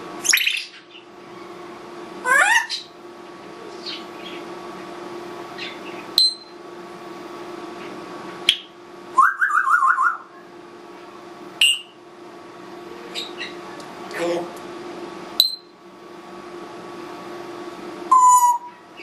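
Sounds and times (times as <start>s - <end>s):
parrot chirp: 0.2s - 1.1s, 2.2s - 3.0s, 3.8s - 4.4s, 5.6s - 6.5s, 8.5s - 10.4s, 11.6s - 12.0s, 13.1s - 13.6s, 18.1s - 19.0s
parrot whistling rising notes: 9.2s - 10.3s, 18.1s - 18.7s.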